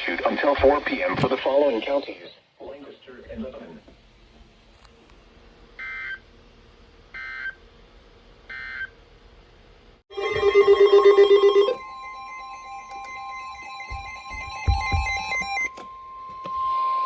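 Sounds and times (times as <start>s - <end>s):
steady two-pitch electronic tone: 10.1s - 17.0s.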